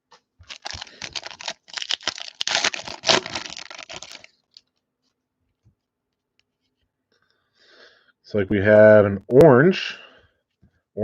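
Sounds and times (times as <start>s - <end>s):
foil wrapper tearing and crinkling: 0.4s - 4.6s.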